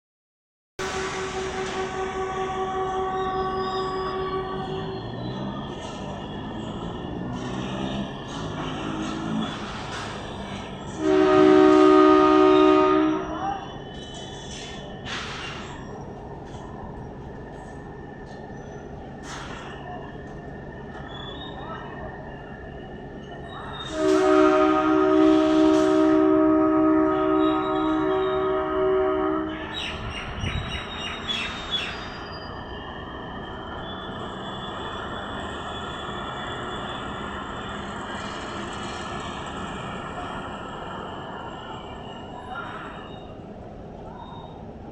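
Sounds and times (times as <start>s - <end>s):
two-tone train horn: 0.8s - 5.1s, 10.9s - 13.6s, 23.9s - 29.7s
train rumbling: 0.8s - 44.9s.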